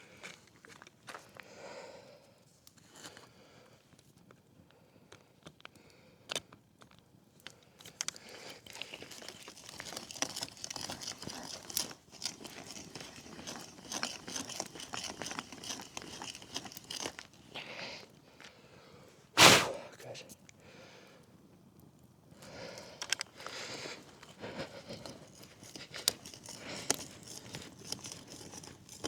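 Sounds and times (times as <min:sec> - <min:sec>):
hand drill bit rasping into wood: 0:09.0 - 0:17.4, 0:24.7 - 0:29.0.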